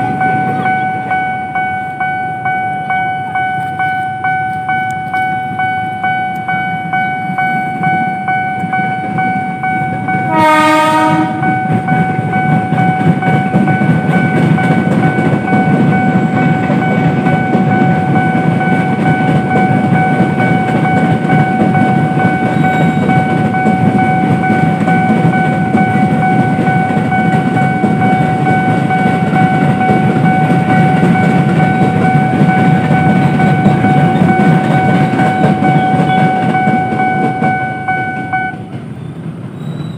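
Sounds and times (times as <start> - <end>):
high-pitched ringing tone: 0.0 - 38.6
train wheels clattering on rails: 0.0 - 39.9
train horn blast: 10.2 - 11.8.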